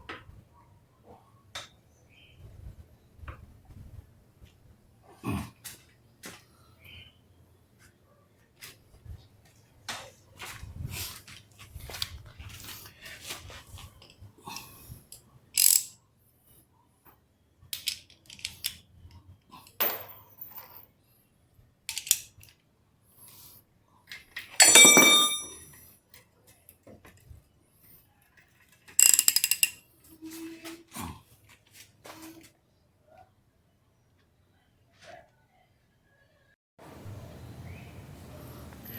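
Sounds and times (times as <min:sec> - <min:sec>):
metal tools clinking and knocking: 0:15.6 - 0:16.0, 0:19.6 - 0:20.8, 0:24.1 - 0:25.9, 0:28.3 - 0:29.8
ringing metallic clanks: 0:24.6 - 0:25.8.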